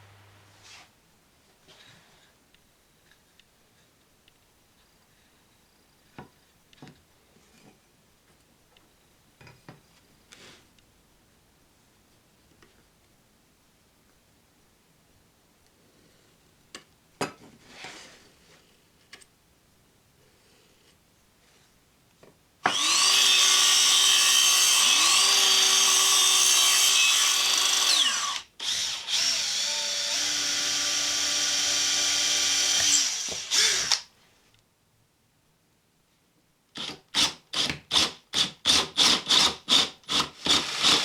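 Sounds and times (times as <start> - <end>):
electric drill running: 22.7 - 34.0.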